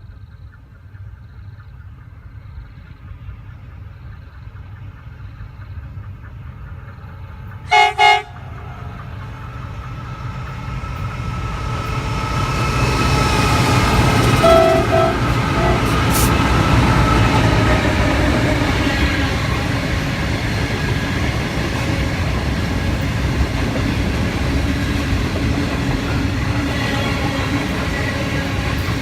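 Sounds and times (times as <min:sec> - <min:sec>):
locomotive engines and wheels rumbling: 0:00.0 - 0:29.0
locomotive horn blasts: 0:07.7 - 0:09.0, 0:13.9 - 0:16.5.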